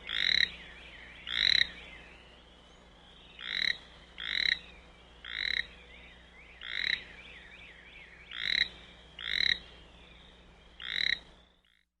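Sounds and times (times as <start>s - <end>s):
toad croaking: 0.0s - 0.6s, 1.3s - 1.7s, 3.4s - 4.6s, 5.2s - 5.7s, 6.6s - 7.0s, 8.3s - 9.6s, 10.8s - 11.8s.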